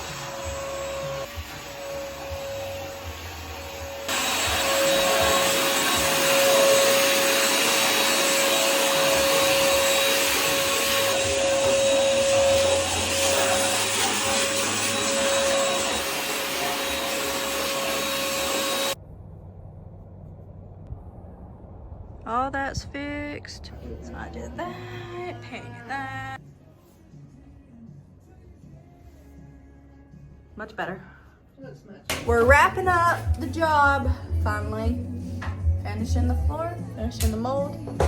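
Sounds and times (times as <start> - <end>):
vacuum cleaner motor whine: 0.0 - 19.0.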